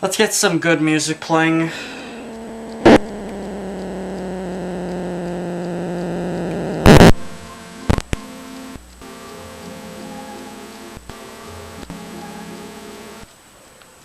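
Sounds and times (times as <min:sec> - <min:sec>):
speaker hiss: 0:00.0 - 0:13.9
amplifier buzzing hum: 0:01.4 - 0:13.3
loud crackling noise: 0:01.4 - 0:13.5
sharp pops from speaker: 0:01.8 - 0:04.3, 0:06.7 - 0:08.3.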